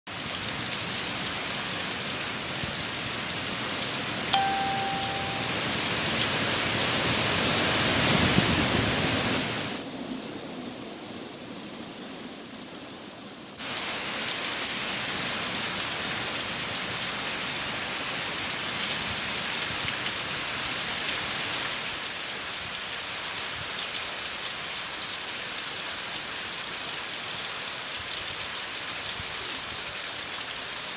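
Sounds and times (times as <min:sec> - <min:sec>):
heavy rain and wind: 0:00.1 - 0:30.9
brief single tone: 0:04.3 - 0:05.6.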